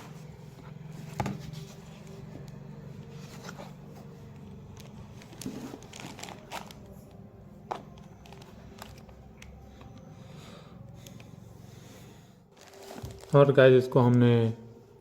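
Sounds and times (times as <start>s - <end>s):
rustling handling noise: 0.0s - 10.0s, 12.5s - 14.5s.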